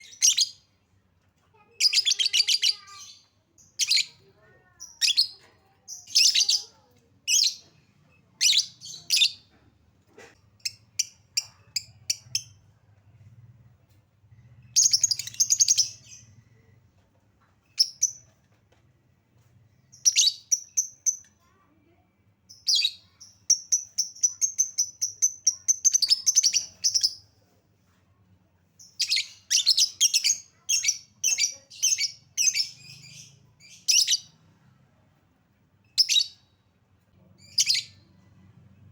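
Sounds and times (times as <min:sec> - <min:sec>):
lovebird chirps: 0:00.0 - 0:00.7, 0:04.8 - 0:06.7, 0:07.3 - 0:09.5, 0:14.7 - 0:16.4, 0:19.9 - 0:21.4, 0:22.5 - 0:27.2, 0:28.8 - 0:34.4, 0:35.8 - 0:36.5, 0:37.4 - 0:38.2.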